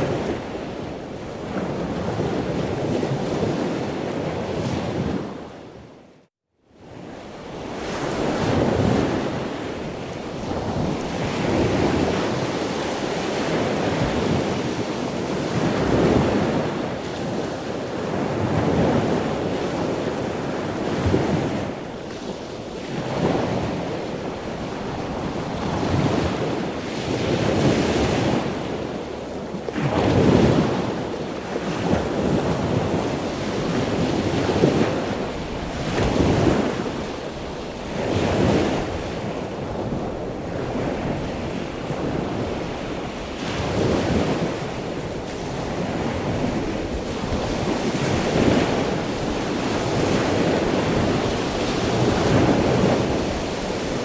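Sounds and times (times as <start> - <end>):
ocean waves: 22.7 - 54.0.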